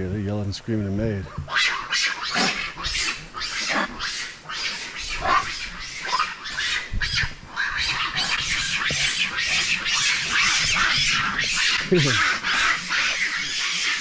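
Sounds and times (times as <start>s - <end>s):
macaques screaming and shrieking: 1.2s - 14.0s.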